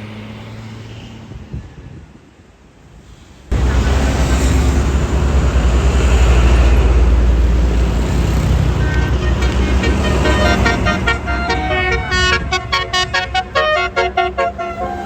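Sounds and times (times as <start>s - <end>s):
bus engine and road noise: 0.0s - 15.0s
multi-note musical horn: 8.8s - 15.0s.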